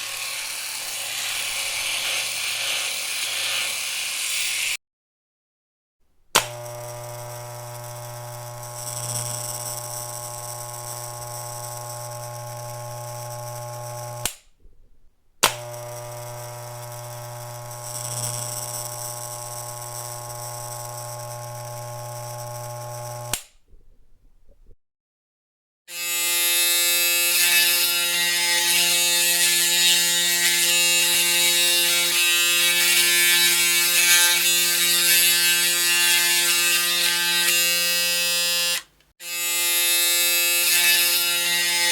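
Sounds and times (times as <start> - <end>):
electric shaver buzzing: 0.0 - 4.8, 6.4 - 14.5, 15.4 - 24.2, 25.9 - 41.9
higher-pitched shaver buzz: 0.0 - 4.8, 6.4 - 14.4, 15.4 - 23.5, 25.9 - 41.9
shaver switch click: 6.3 - 6.8, 14.0 - 14.6, 15.4 - 15.8, 23.2 - 23.8.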